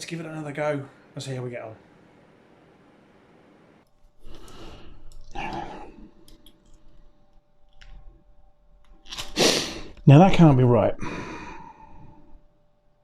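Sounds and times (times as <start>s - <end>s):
person breathing: 4.2s - 7.1s, 11.0s - 12.5s.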